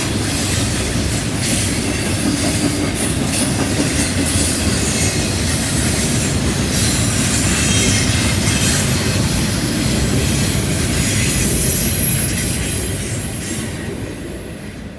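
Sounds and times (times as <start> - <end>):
train wheels rumbling on rail: 0.0 - 14.9
high wheel squeal: 1.4 - 8.4.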